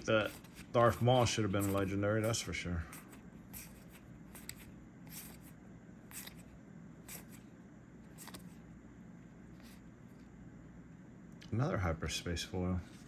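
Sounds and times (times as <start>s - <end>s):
trading cards sliding and flicking: 0.0s - 7.5s, 8.1s - 8.6s
faint room hum: 0.0s - 13.0s.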